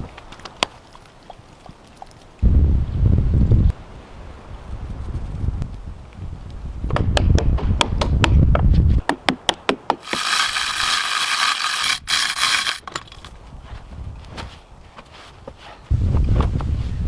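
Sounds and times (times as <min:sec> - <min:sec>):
ratchet clicking: 0:10.0 - 0:12.9.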